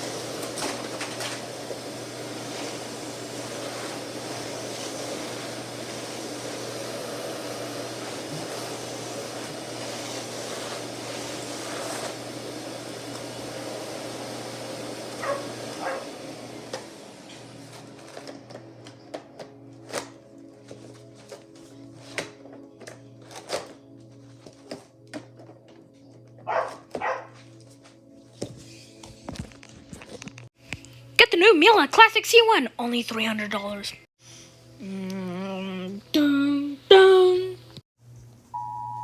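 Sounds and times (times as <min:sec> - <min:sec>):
vacuum cleaner running: 0:00.0 - 0:29.5.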